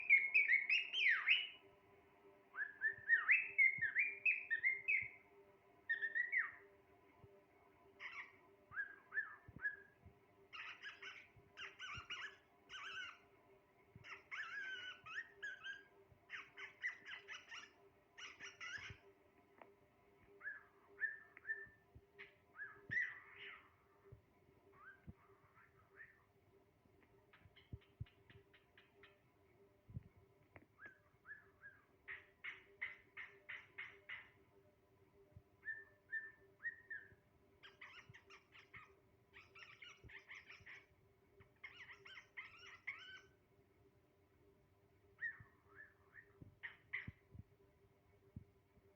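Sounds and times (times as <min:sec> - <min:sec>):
cockatiel whistling and warbling: 0:00.0 - 0:01.6, 0:02.5 - 0:05.2, 0:05.9 - 0:06.6, 0:08.0 - 0:09.9, 0:10.5 - 0:13.2, 0:14.0 - 0:19.0, 0:20.4 - 0:23.7, 0:30.8 - 0:34.2, 0:35.6 - 0:40.9, 0:41.6 - 0:43.4, 0:45.2 - 0:47.2.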